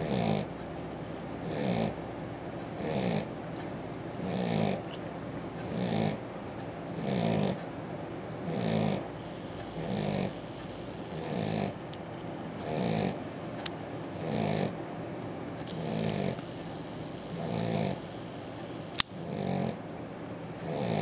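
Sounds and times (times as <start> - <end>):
puppy snoring: 0.0 - 0.6, 1.4 - 2.0, 2.7 - 3.4, 4.1 - 5.0, 5.6 - 6.2, 6.9 - 7.6, 8.4 - 11.8, 12.6 - 13.2, 14.1 - 14.8, 15.7 - 19.8, 20.6 - 21.0
sharp click: 18.9 - 19.2.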